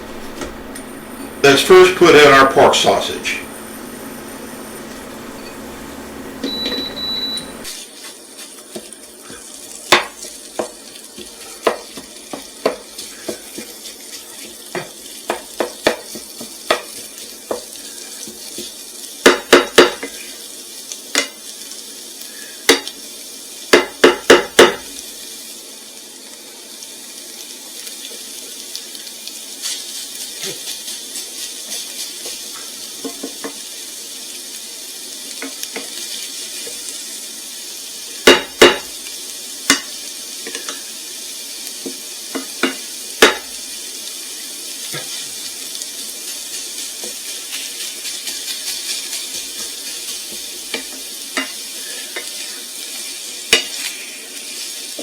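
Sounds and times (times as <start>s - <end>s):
sausage sizzling in a frying pan: 0.0s - 55.0s
utensil knocking against pan: 19.2s - 20.1s, 23.8s - 24.9s, 38.3s - 38.9s, 42.4s - 43.5s.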